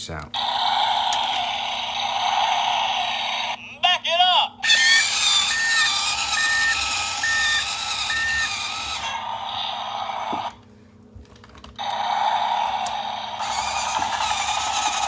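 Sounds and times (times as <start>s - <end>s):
toy electronic engine sound: 0.4s - 3.6s, 4.6s - 10.6s, 11.8s - 15.0s
toy reversing beep: 4.6s - 9.2s, 13.4s - 15.0s.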